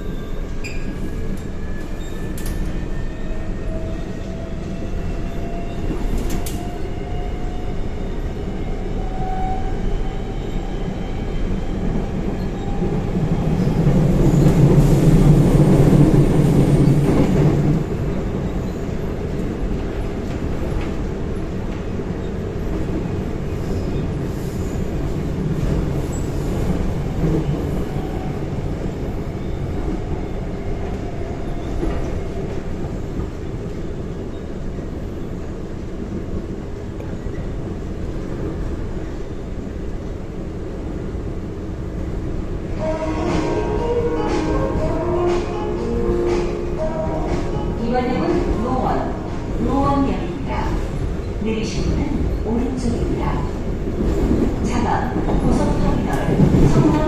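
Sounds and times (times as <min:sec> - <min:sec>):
train wheel rumble: 0:00.0 - 0:57.0.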